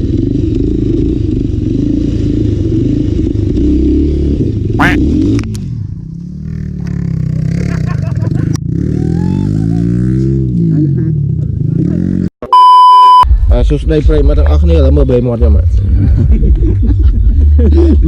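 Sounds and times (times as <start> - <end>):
motorcycle engine running: 0.0 - 12.2.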